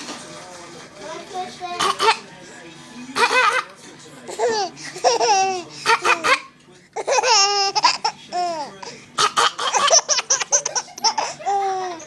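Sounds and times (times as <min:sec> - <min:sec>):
baby laughing: 0:03.2 - 0:03.7, 0:04.3 - 0:12.0.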